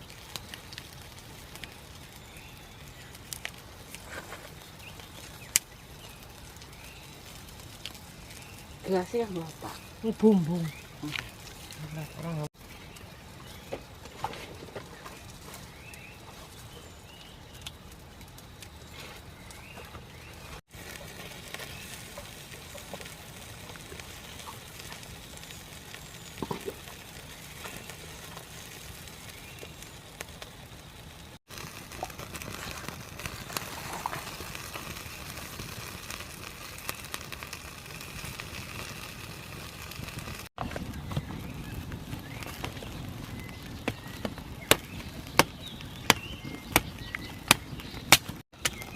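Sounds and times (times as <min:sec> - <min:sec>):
wood fire crackling: 0:00.0 - 0:48.9.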